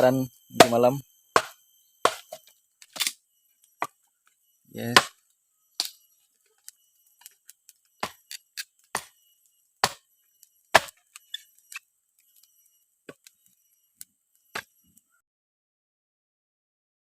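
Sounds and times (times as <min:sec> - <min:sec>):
blade striking firewood: 0:00.6 - 0:03.2, 0:03.8 - 0:04.0, 0:04.8 - 0:06.0, 0:08.0 - 0:09.2, 0:09.8 - 0:10.1, 0:10.7 - 0:11.8, 0:14.5 - 0:14.8.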